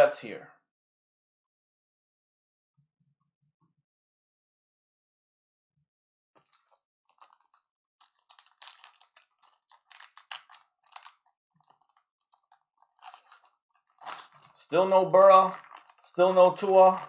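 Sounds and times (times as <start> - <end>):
trading cards rustling: 6.4 - 17.0
wrapper crinkling: 6.4 - 17.0.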